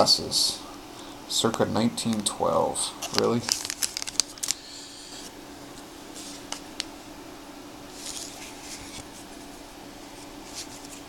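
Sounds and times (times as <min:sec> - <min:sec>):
faint steady hum: 0:00.0 - 0:11.0
cards sliding by hand: 0:03.0 - 0:07.0, 0:07.9 - 0:11.0.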